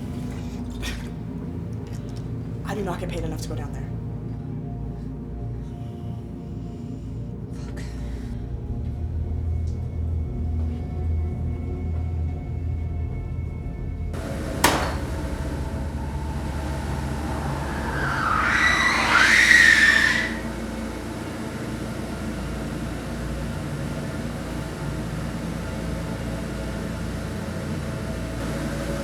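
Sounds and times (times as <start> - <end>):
steady low hum: 0.0 - 29.0
door creaking open: 14.2 - 20.5.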